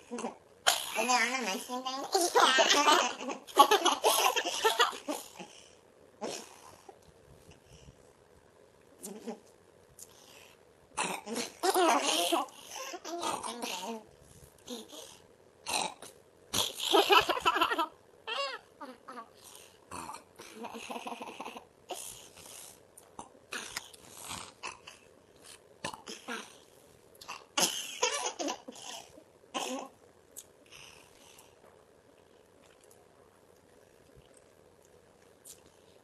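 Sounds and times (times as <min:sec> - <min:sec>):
coughing: 0:00.0 - 0:05.6, 0:11.0 - 0:14.1, 0:27.2 - 0:30.0
burping: 0:15.6 - 0:16.8.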